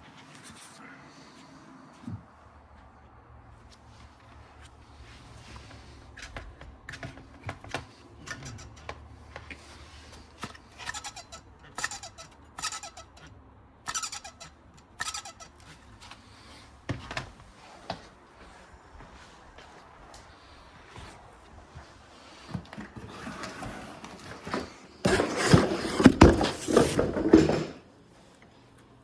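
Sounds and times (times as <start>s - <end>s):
cooling fan humming: 0.0s - 29.0s
fan squealing: 5.0s - 17.4s.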